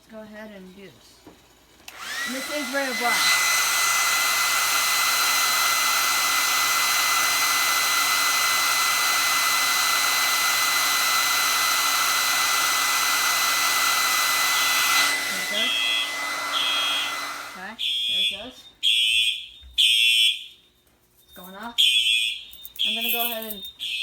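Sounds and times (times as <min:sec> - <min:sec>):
hair dryer blowing: 0:01.2 - 0:17.8
fire alarm beeps: 0:17.8 - 0:24.0.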